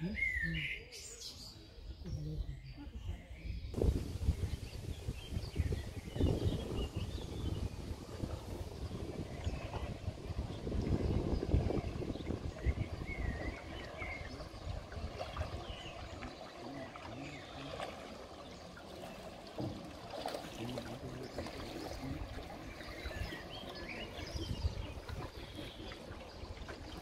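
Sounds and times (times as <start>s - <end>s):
small birds chirping: 0.0s - 27.0s
wind buffeting microphone: 2.1s - 16.8s, 20.6s - 27.0s
running water: 3.7s - 27.0s.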